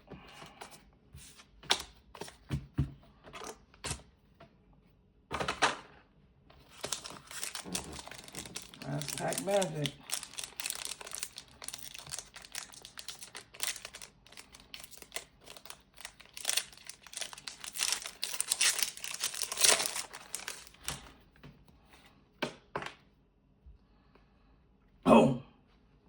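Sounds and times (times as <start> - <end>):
foil wrapper crinkling: 6.6 - 21.2.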